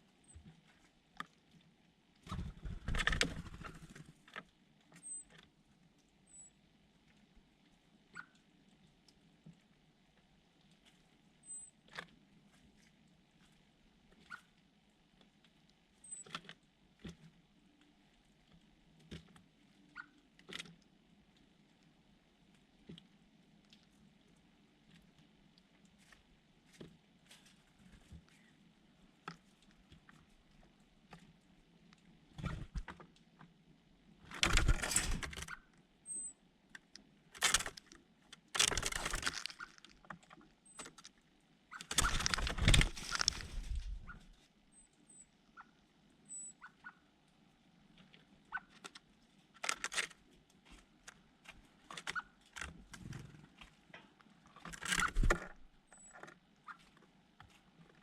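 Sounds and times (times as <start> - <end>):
faint high bird chirps: 5.0 - 5.3, 6.2 - 6.6, 11.4 - 11.8, 35.5 - 36.4, 44.0 - 47.0
rustling bursts: 41.9 - 44.3.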